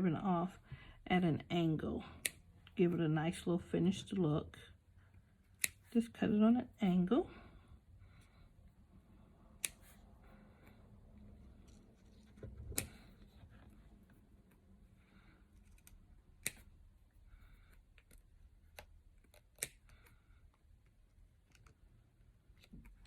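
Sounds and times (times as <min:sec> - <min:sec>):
scissors snipping: 0:05.5 - 0:06.0, 0:09.6 - 0:10.0, 0:15.6 - 0:16.7, 0:18.0 - 0:20.1.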